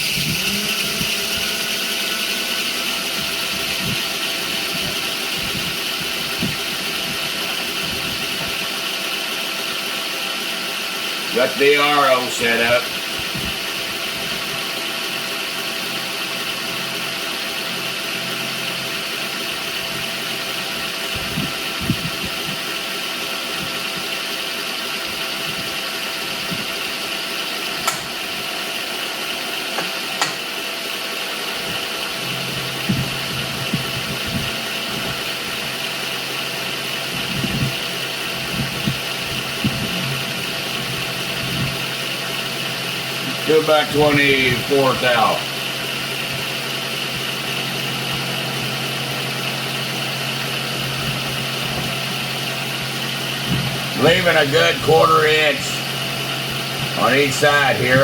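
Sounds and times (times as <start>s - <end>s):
milling machine hum and whine: 0.0s - 58.0s
sharp clicks: 27.8s - 28.2s.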